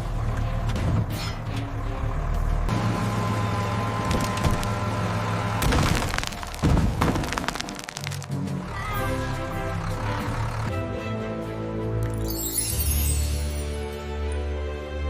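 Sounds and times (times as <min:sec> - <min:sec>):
vehicle engine running: 0:00.0 - 0:10.9
wood cracking and splintering: 0:04.0 - 0:05.0, 0:05.6 - 0:08.5.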